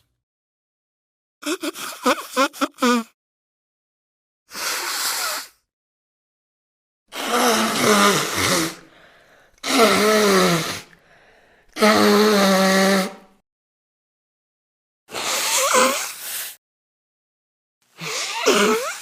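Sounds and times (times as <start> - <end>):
person blowing nose: 1.4 - 3.2, 4.5 - 5.6, 7.1 - 11.0, 11.8 - 13.3, 15.1 - 16.6, 18.0 - 19.0.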